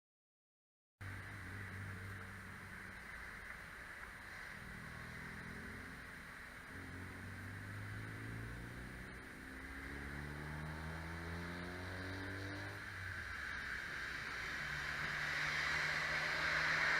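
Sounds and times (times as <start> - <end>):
steady hiss: 1.0 - 10.4, 12.2 - 16.9
vehicle engine speeding up: 3.9 - 16.9.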